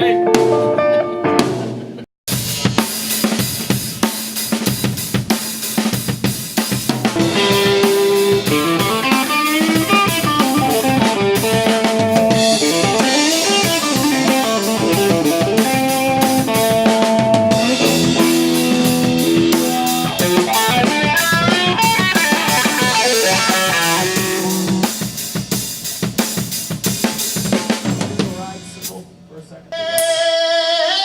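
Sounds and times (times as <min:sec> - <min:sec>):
guitar with bending notes: 0:00.0 - 0:01.9, 0:06.9 - 0:25.1
rock band playing: 0:00.0 - 0:30.3
drum kit beat: 0:01.4 - 0:30.4.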